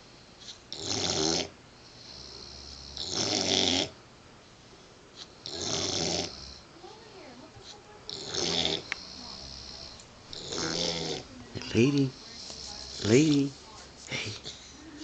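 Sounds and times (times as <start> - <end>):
puppy snoring deeply: 0.7 - 4.0, 5.4 - 6.6, 8.1 - 11.3.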